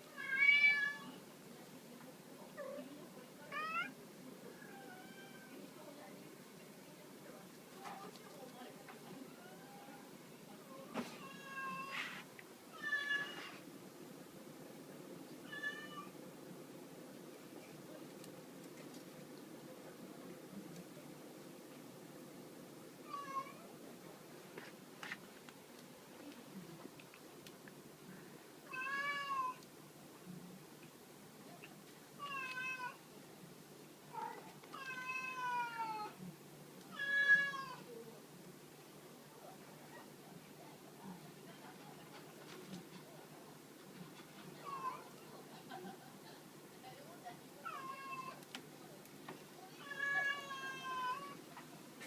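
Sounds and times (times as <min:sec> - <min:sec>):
cat meowing: 0:00.1 - 0:01.2, 0:04.7 - 0:05.5, 0:11.2 - 0:12.0, 0:12.8 - 0:13.6, 0:15.5 - 0:16.1, 0:28.7 - 0:29.6, 0:32.2 - 0:33.0, 0:34.7 - 0:36.2, 0:36.9 - 0:37.9, 0:49.8 - 0:51.4.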